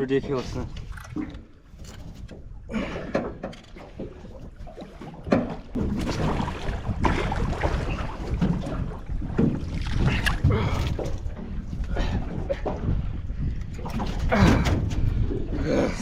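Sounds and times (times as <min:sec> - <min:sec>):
wind buffeting microphone: 0:05.7 - 0:16.0.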